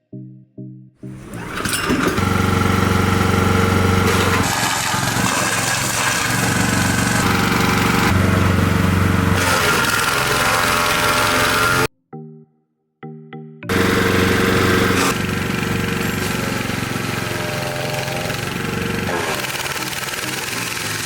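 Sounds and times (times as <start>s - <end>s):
wood chipper running: 1.1s - 11.9s, 13.7s - 21.0s.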